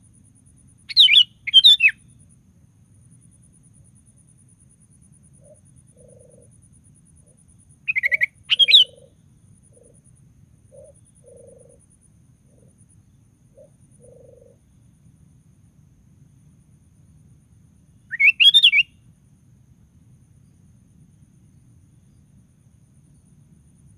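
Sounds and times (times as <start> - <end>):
soft low two-part bird call: 18.1 - 18.9.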